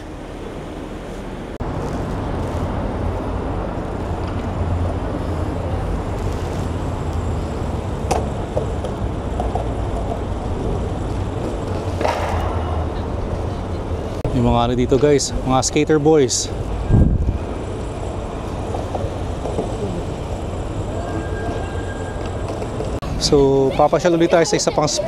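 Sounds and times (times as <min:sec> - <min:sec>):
road traffic with low hum: 0:00.0 - 0:25.0.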